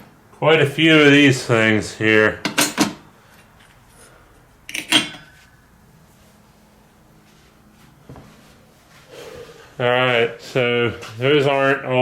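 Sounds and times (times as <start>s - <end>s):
metal heat sinks clinking: 2.4s - 3.0s, 4.7s - 5.4s.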